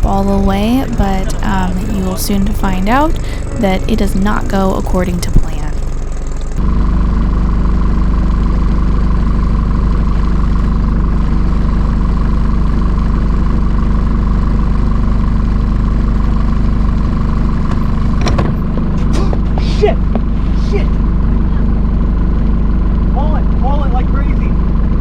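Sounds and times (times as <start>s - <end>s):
steady higher tone: 0.0s - 14.2s
boat engine running: 0.0s - 25.0s.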